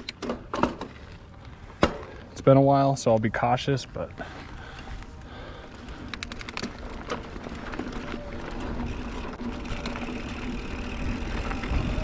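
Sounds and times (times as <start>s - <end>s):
bike tyres on dirt trail: 0.0s - 12.0s
sharp clicks: 5.8s - 6.9s
wind rushing over microphone: 10.9s - 12.0s.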